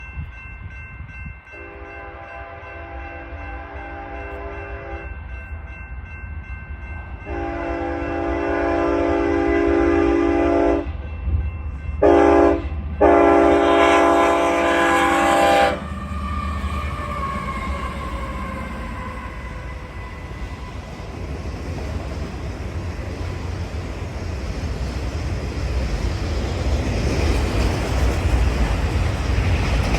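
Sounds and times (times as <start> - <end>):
locomotive air horn blasts: 1.6 - 5.1, 7.3 - 10.9, 12.0 - 16.6.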